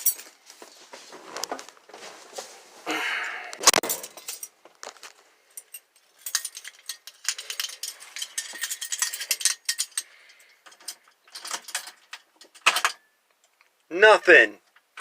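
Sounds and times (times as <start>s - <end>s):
metallic jingling: 5.5s - 13.1s.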